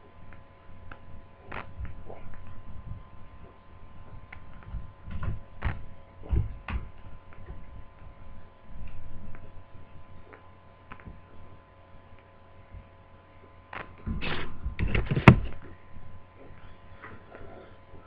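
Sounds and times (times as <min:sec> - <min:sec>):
plastic scraping and knocking: 0:14.0 - 0:15.6.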